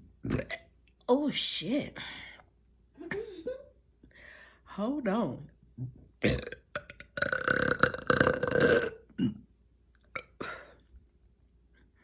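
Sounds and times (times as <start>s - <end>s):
woman burping: 0.2s - 0.7s, 6.2s - 9.5s, 10.1s - 10.8s.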